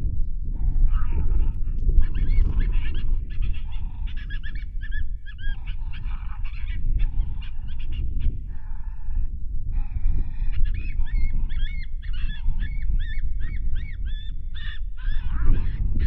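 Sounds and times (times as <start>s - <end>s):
steady low rumble: 0.0s - 16.0s
coyotes yipping and howling: 0.6s - 16.0s.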